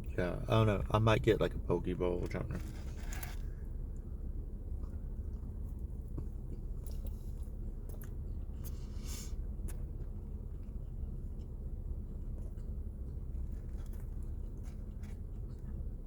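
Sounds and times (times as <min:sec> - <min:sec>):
steady low hum: 0:00.0 - 0:16.0
person chewing: 0:04.8 - 0:11.1.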